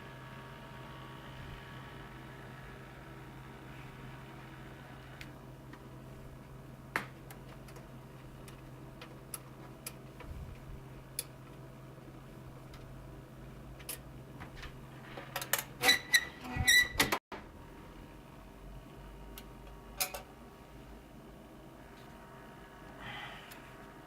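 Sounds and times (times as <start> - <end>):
squeaks and clattering: 15.1 - 17.2
low steady hum: 17.4 - 24.0.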